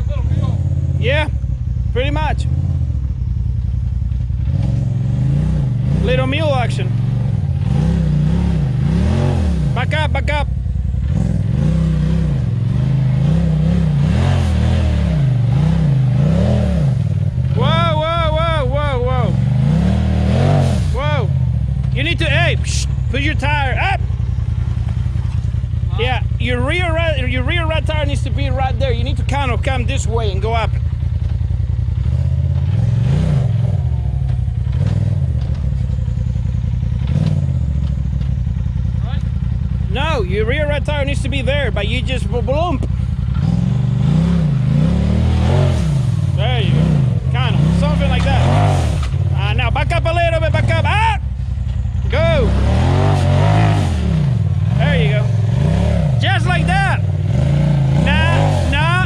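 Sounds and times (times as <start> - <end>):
engine revving in throttle blips: 0.0 - 59.0.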